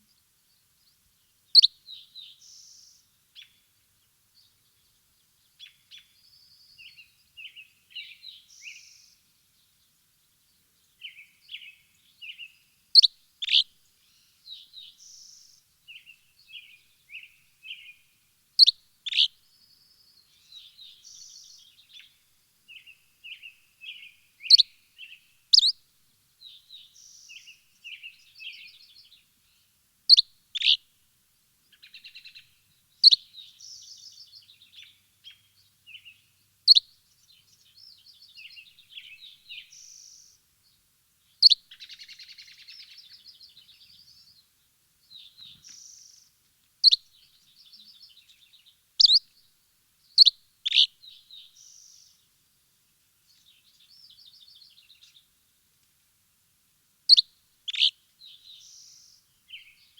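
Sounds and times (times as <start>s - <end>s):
small birds chirping: 0.0s - 25.8s, 26.4s - 30.8s, 31.6s - 55.4s, 57.0s - 59.9s
soft bird trills and warbles: 13.0s - 13.7s, 18.6s - 22.1s, 22.7s - 25.8s, 41.4s - 44.4s, 45.2s - 49.4s, 50.1s - 52.2s, 57.1s - 59.9s.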